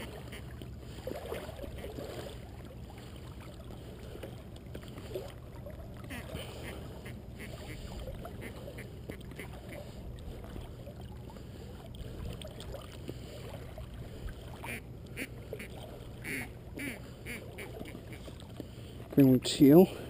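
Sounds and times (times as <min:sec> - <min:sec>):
steady low rumble: 0:02.4 - 0:19.1
duck quacks: 0:14.7 - 0:18.0.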